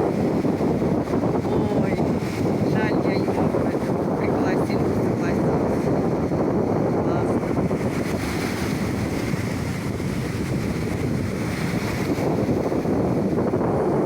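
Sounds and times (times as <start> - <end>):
sea surf washing in: 0.0 - 14.0
wind buffeting microphone: 0.0 - 14.0.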